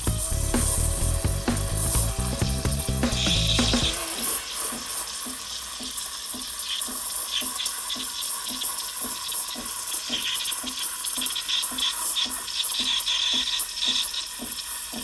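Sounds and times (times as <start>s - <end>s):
steam wand hissing in milk: 3.7s - 15.0s.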